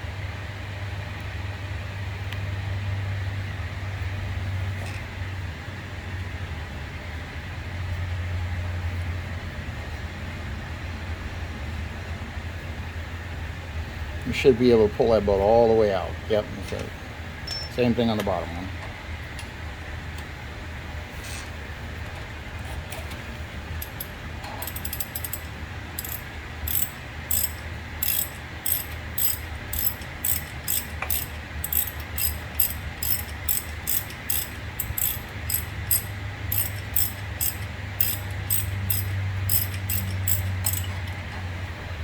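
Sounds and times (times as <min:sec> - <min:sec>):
steady low hum: 0:23.3 - 0:42.0
hand ratchet clicking: 0:23.8 - 0:40.9.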